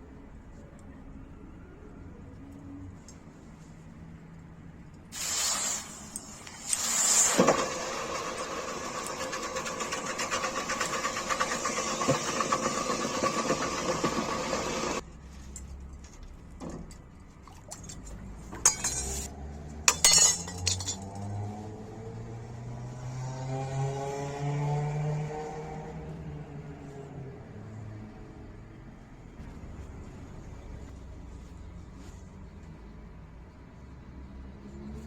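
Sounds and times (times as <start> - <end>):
power tool whining: 7.4 - 15.0.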